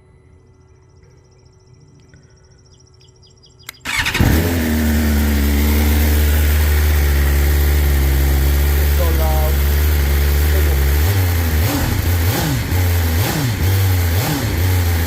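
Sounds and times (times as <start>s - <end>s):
motorcycle engine starting and idling: 3.7s - 15.0s.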